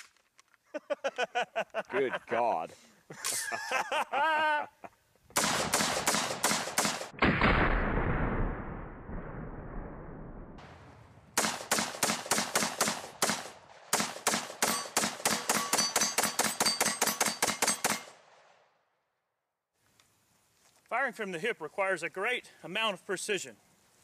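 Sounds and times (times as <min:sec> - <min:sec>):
rifle fired rapidly: 0:05.4 - 0:07.9, 0:11.4 - 0:18.2.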